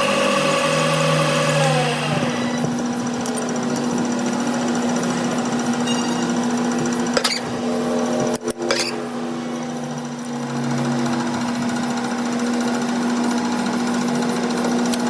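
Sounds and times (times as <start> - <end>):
rapid mechanical rattle: 0.0 - 15.0
workshop machinery humming: 0.0 - 15.0.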